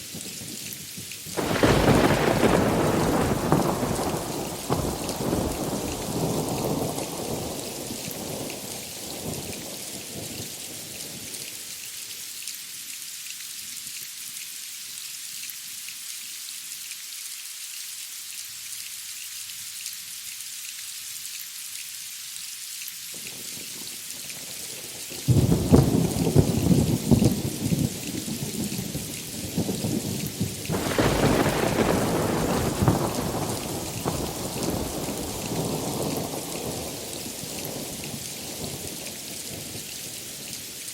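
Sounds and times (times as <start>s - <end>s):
heavy rain: 0.0s - 40.9s
loud thunderclap: 1.4s - 8.6s, 25.3s - 38.8s
thunder rumbling: 1.4s - 10.2s, 25.3s - 39.8s.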